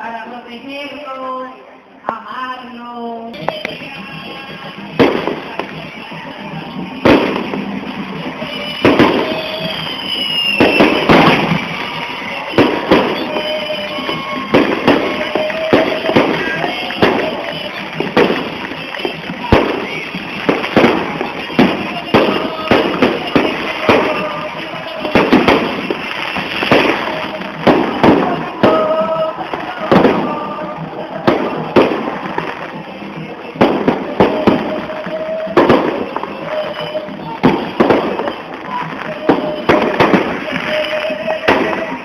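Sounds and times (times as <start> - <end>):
fireworks and firecrackers banging: 0.0 - 42.0.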